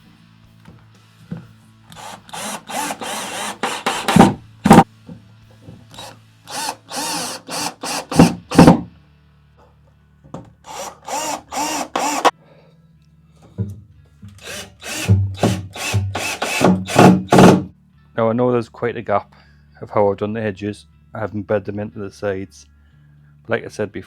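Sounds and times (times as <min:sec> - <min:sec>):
power drill bursts: 0:02.0 - 0:04.8, 0:06.0 - 0:08.8, 0:10.7 - 0:12.3, 0:14.4 - 0:17.7.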